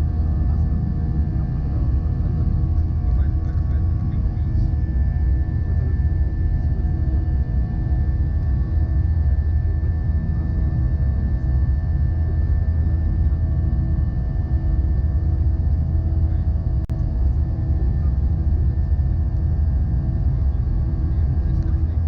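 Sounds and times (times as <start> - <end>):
airplane cabin engine rumble: 0.0 - 22.0
faint engine tones: 0.0 - 22.0.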